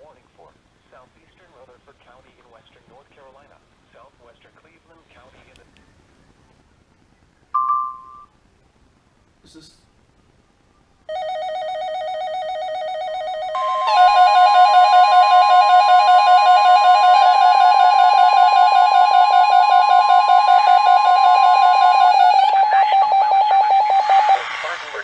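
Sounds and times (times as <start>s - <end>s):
steady warning tone: 11.1s - 24.4s
warbling alarm tone: 11.1s - 24.5s.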